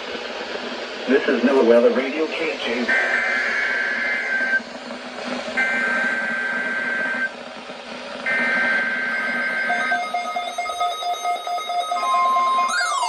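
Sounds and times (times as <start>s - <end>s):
buzzy data bursts: 1.1s - 7.4s, 8.2s - 13.0s
pulsing beep: 2.9s - 4.6s, 5.6s - 7.3s, 8.3s - 13.0s.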